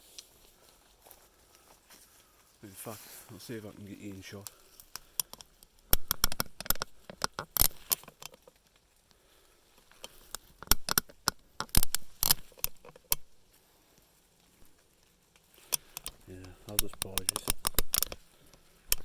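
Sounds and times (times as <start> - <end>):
camera handling clicks and rustling: 4.4 - 8.5, 9.9 - 13.3, 15.6 - 19.0.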